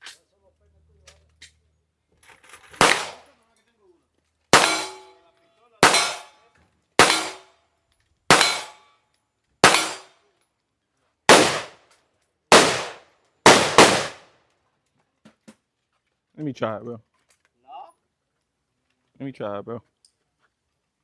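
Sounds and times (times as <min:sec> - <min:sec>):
gunshots with echoing tail: 0:02.8 - 0:03.2, 0:04.6 - 0:05.1, 0:05.8 - 0:06.3, 0:07.0 - 0:07.4, 0:08.3 - 0:08.8, 0:09.6 - 0:10.1, 0:11.3 - 0:11.8, 0:12.5 - 0:14.2.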